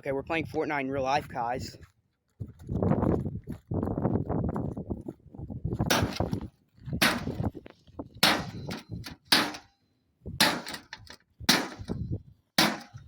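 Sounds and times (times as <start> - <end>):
crowbar striking microwave oven: 7.0 - 7.4, 8.2 - 9.7, 10.4 - 12.0, 12.6 - 13.0.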